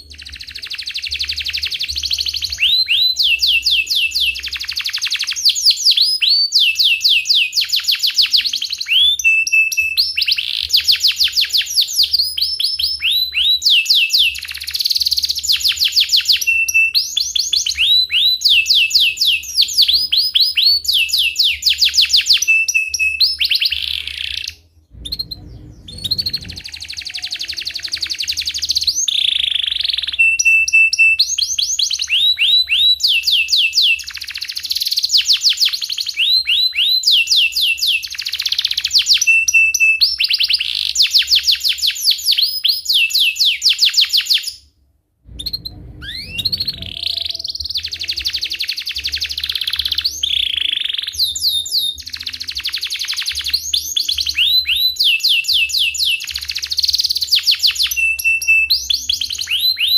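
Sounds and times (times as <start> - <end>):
canary singing trills: 0.0 - 44.6, 45.3 - 59.9
short low rumble: 24.9 - 26.9, 45.2 - 47.5.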